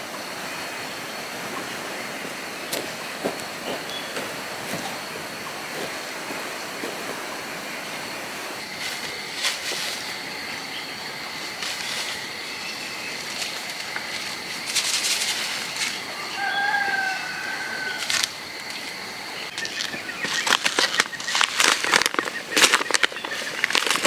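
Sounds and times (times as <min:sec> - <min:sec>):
rustling and crackling: 0:08.6 - 0:10.2, 0:11.4 - 0:16.2, 0:18.0 - 0:24.0.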